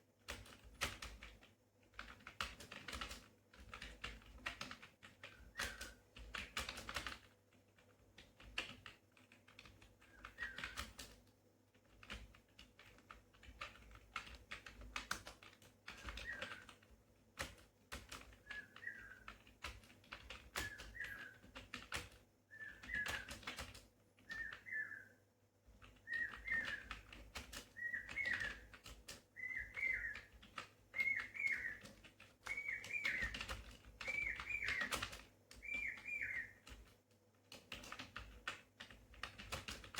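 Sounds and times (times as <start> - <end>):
computer keyboard typing: 0.2 - 25.0, 25.7 - 39.9
bird chirping call: 16.1 - 16.7, 18.5 - 19.3, 20.6 - 21.5, 22.5 - 23.5, 24.2 - 25.2, 26.0 - 27.1, 27.7 - 28.7, 29.4 - 30.4, 31.0 - 36.7.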